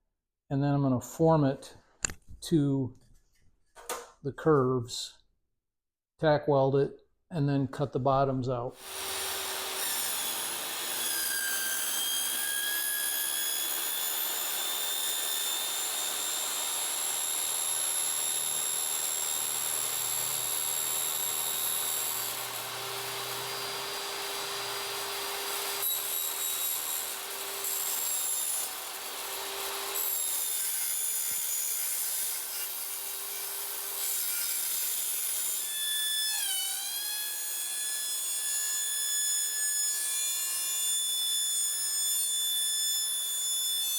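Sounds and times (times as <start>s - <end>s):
power tool cutting sheet metal: 8.8s - 43.9s.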